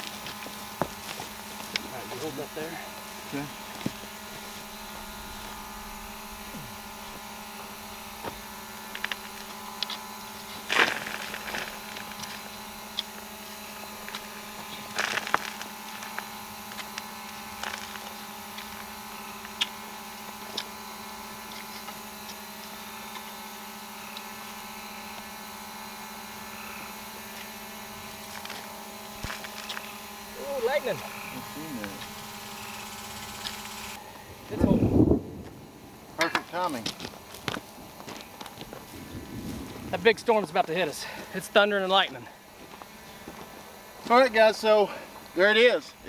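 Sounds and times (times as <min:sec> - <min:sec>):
steady hum: 0:00.0 - 0:46.0.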